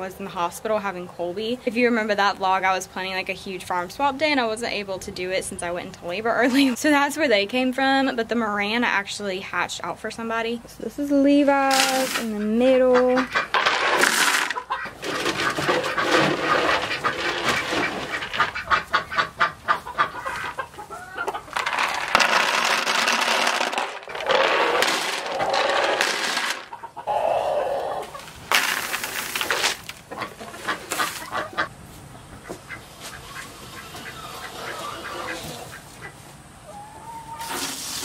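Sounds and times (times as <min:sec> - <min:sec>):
chickens clucking: 0:12.3 - 0:22.1, 0:24.2 - 0:28.4, 0:29.6 - 0:38.0.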